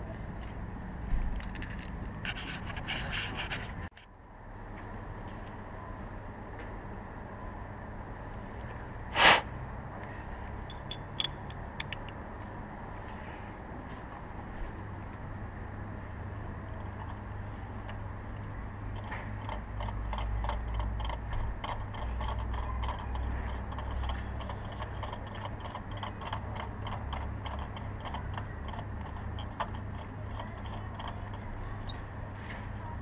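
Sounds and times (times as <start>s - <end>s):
ratchet wrench clicking: 19.0s - 32.0s.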